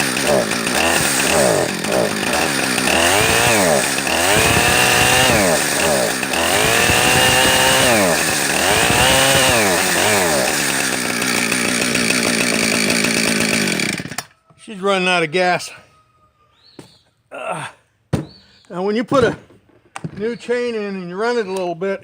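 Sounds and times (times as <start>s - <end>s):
chainsaw revving and idling: 0.0s - 14.3s.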